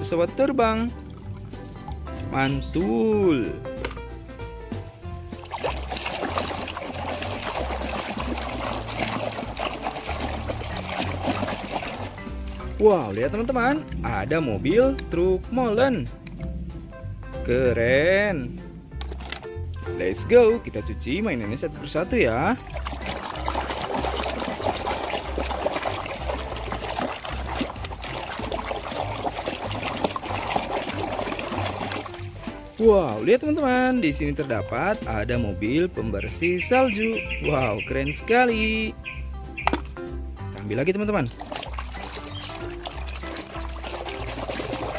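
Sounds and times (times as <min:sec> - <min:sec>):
water pouring and trickling: 0:00.0 - 0:03.9, 0:05.0 - 0:16.5, 0:19.0 - 0:38.2, 0:39.0 - 0:44.9
background music with bass line: 0:00.0 - 0:44.9
small splashes and clicks: 0:01.0 - 0:02.6, 0:05.3 - 0:14.0, 0:22.6 - 0:33.8, 0:39.6 - 0:44.9.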